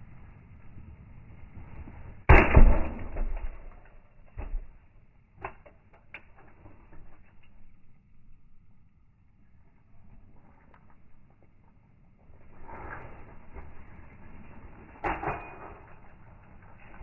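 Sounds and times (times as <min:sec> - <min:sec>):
axe splitting log: 0:02.3 - 0:04.8.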